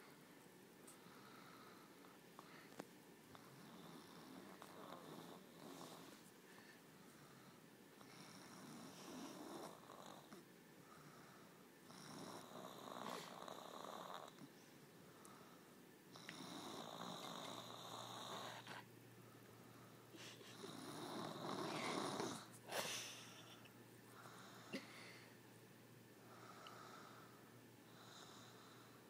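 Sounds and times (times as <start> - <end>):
quiet breathing: 0.0 - 29.0
person snoring: 20.5 - 22.5.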